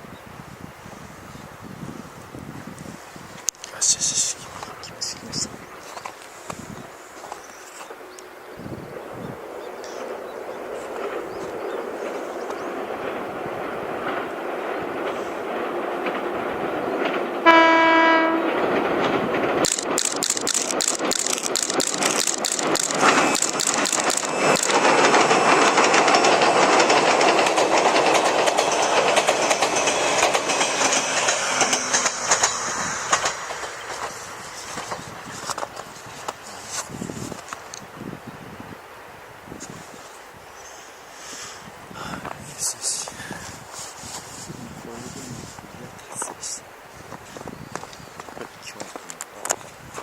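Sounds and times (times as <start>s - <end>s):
train rumble on bridge: 0.6s - 50.0s
train wheels clickety-clack: 9.6s - 37.8s
train horn note: 17.4s - 18.6s.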